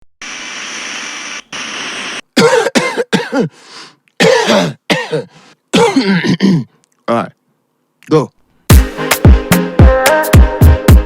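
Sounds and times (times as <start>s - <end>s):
steady hiss: 0.2s - 2.2s
person coughing harshly: 2.4s - 3.6s, 4.2s - 6.8s.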